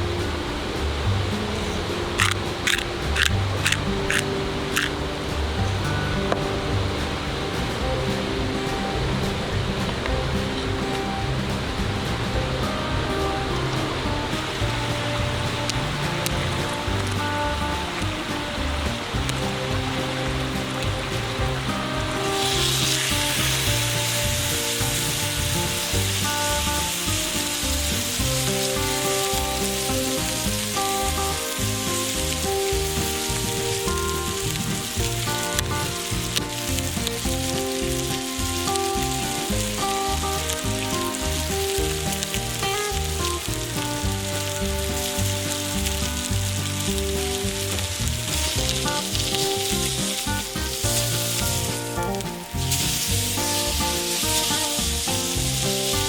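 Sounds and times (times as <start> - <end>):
background music: 0.0 - 56.0
steak sizzling in a pan: 0.2 - 9.0, 10.1 - 56.0.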